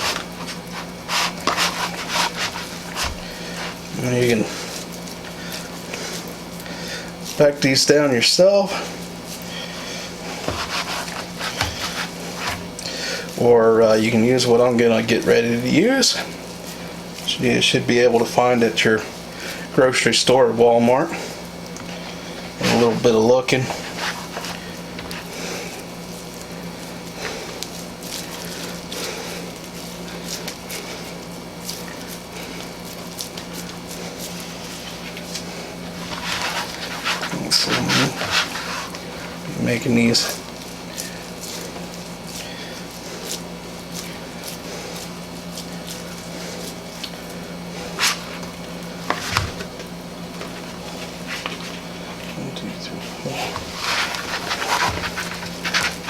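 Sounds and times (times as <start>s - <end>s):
hands shaping raw meat: 0.0s - 17.3s, 21.3s - 56.0s
steady low hum: 0.0s - 56.0s
hands squishing wet meat: 40.3s - 52.3s.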